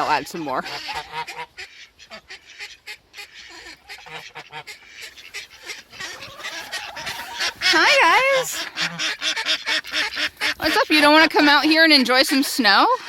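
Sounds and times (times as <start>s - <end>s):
faint waterfowl honks: 0.0s - 13.0s
crunching steps in snow: 5.0s - 8.4s.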